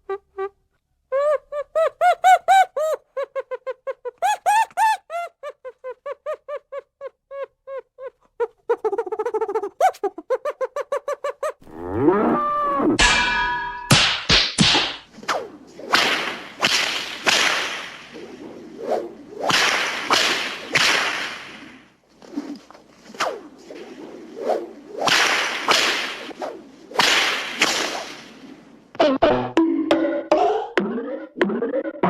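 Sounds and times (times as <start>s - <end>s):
whip cracks with swishing whoosh: 13.9s - 28.7s.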